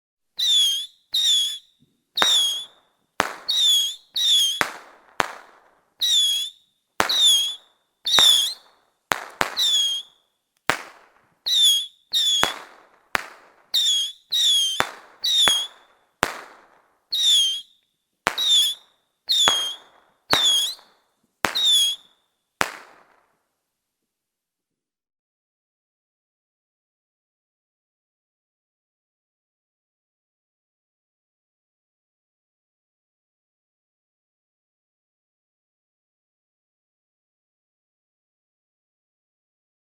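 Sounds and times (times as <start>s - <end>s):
whistling firecrackers: 0.4s - 23.3s.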